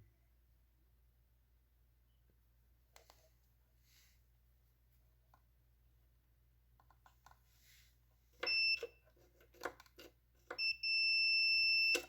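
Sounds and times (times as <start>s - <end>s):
multimeter beeping: 8.4s - 9.0s, 10.5s - 12.0s.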